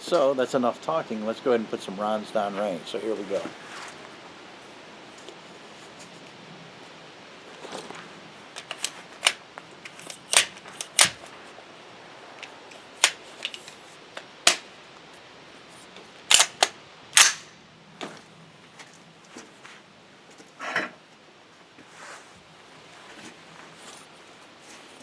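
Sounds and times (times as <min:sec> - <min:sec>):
gunshots: 0:17.2 - 0:17.5.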